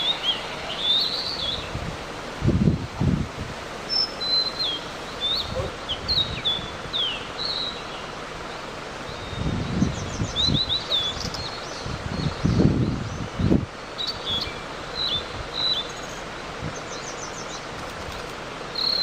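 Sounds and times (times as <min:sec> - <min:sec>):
bird singing chirps and whistles: 0:00.0 - 0:01.8, 0:03.9 - 0:08.0, 0:09.1 - 0:16.2, 0:18.8 - 0:19.0.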